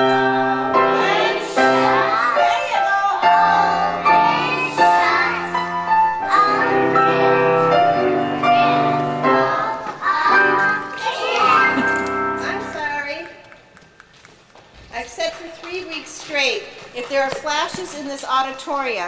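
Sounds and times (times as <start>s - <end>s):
song with singing voices: 0.0s - 11.8s.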